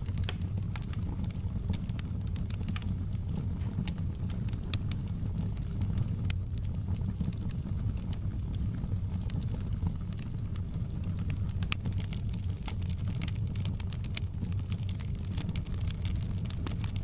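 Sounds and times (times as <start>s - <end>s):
fire popping and snapping: 0.0s - 17.0s
low rumble of flame: 0.0s - 17.0s.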